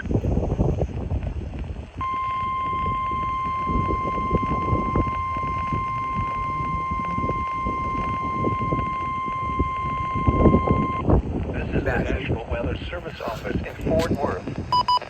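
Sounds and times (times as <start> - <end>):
radio reception noise: 0.0 - 15.0
steady alarm tone: 2.0 - 11.1.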